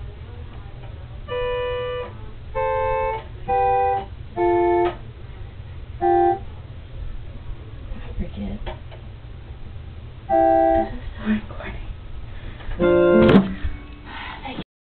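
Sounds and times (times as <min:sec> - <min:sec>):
electronic keyboard chords: 0:01.3 - 0:05.0, 0:06.0 - 0:06.4, 0:12.8 - 0:13.4.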